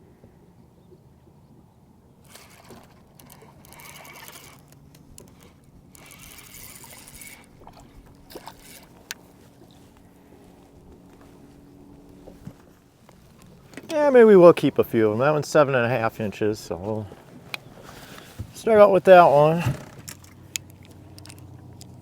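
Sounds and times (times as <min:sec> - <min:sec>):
water trickling and splashing: 0:02.3 - 0:11.1.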